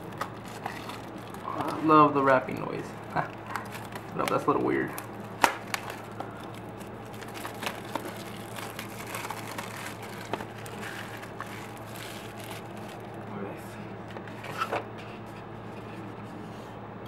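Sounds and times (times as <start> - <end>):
plastic wrap crinkling: 0.0 - 13.3
steady low hum: 0.0 - 17.0.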